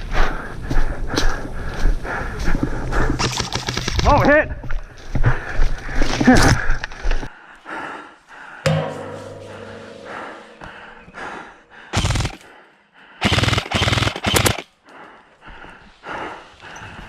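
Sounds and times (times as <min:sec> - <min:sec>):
sharp knock: 0:08.7 - 0:10.7
steady tone: 0:08.7 - 0:11.3
airsoft rifle full-auto bursts: 0:11.9 - 0:12.4, 0:13.2 - 0:14.7.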